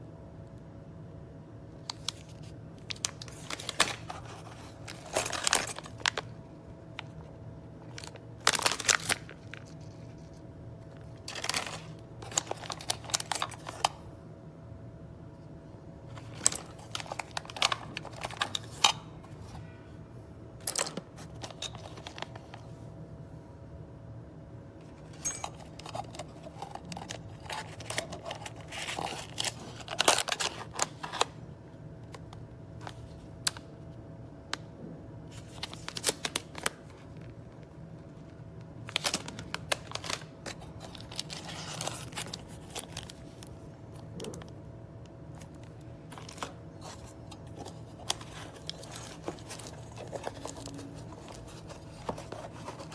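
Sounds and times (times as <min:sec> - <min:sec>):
faint electrical hum: 0:00.0 - 0:52.9
packaging rustling and crinkling: 0:01.8 - 0:06.4, 0:07.0 - 0:13.9, 0:16.1 - 0:18.9, 0:20.7 - 0:22.8, 0:24.9 - 0:31.4, 0:35.3 - 0:44.6, 0:45.3 - 0:52.9.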